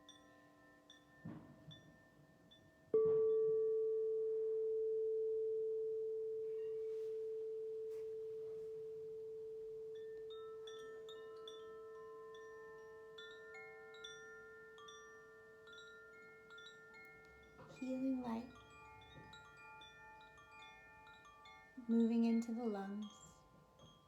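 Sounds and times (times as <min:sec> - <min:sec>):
low meditation tone ringing: 0:00.0 - 0:24.0
wind chimes jingling: 0:10.0 - 0:24.0.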